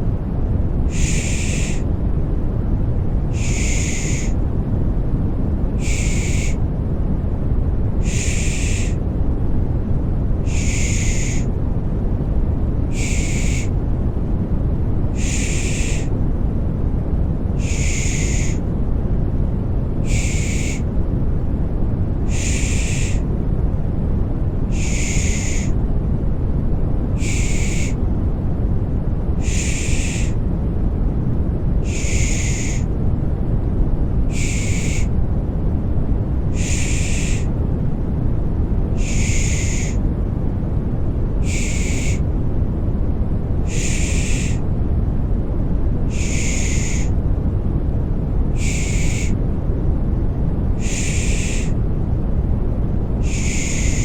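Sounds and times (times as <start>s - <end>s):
deep white noise: 0.0s - 54.0s
person shushing: 0.9s - 1.8s, 8.0s - 9.0s.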